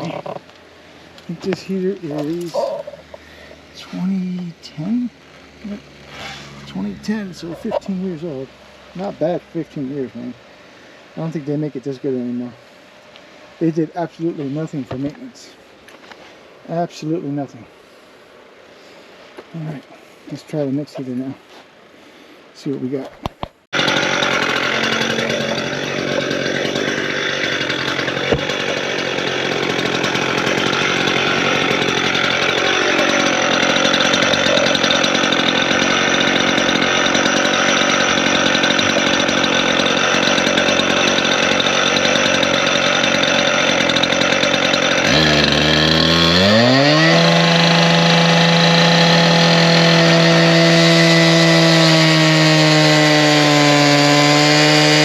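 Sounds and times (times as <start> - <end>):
saw blade grinding steel: 5.3 - 8.2
cut-off saw engine running hard: 23.8 - 55.0.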